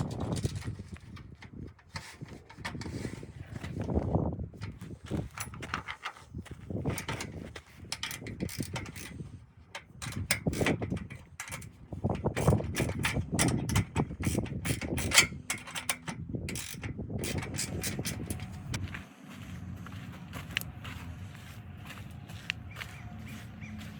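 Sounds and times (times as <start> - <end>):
metal hardware clanking and rattling: 0.0 - 18.8.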